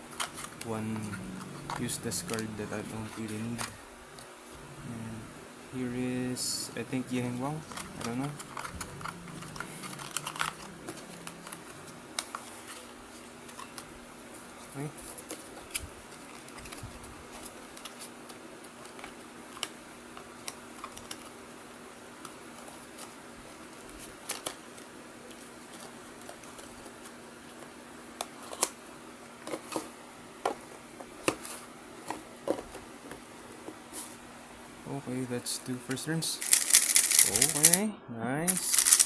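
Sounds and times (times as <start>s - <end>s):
faint steady hum: 0.0s - 39.0s
small plastic parts clicking: 36.4s - 37.8s, 38.5s - 39.0s.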